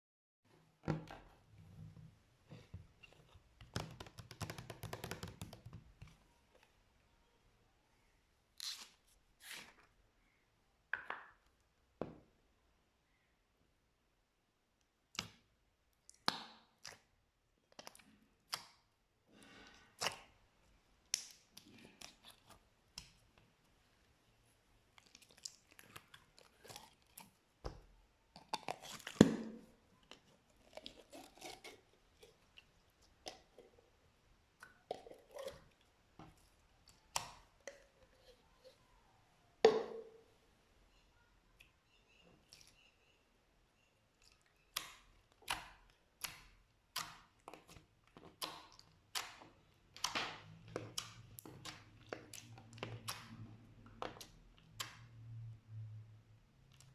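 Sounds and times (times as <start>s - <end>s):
slime squelching and popping: 44.2s - 55.2s.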